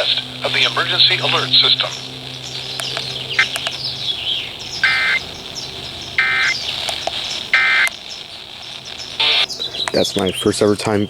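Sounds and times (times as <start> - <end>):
buzzy digital data bursts: 0.0 - 11.0.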